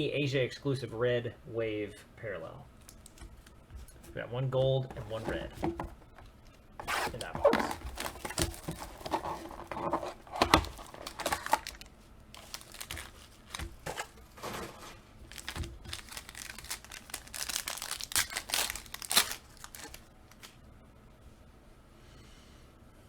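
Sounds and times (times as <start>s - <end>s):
card packaging tearing and crinkling: 4.9s - 20.6s.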